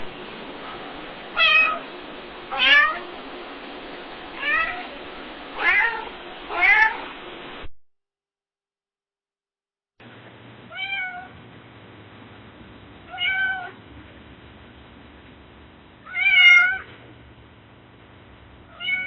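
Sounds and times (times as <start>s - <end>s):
cat meowing: 1.3s - 1.8s, 2.5s - 3.1s, 4.4s - 5.0s, 5.6s - 7.1s, 10.7s - 11.3s, 13.1s - 13.8s, 16.0s - 16.9s, 18.7s - 19.0s.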